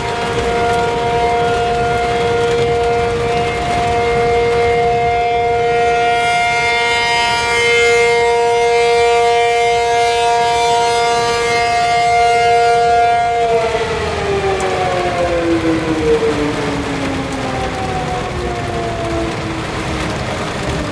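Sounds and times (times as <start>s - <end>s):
tornado warning siren two-note chord: 0.0s - 20.9s.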